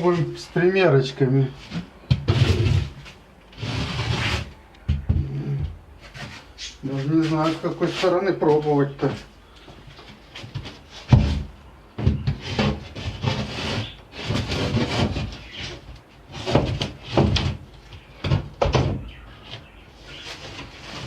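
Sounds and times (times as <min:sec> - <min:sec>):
wooden board knocking and scraping: 0:01.7 - 0:06.4, 0:10.0 - 0:19.7.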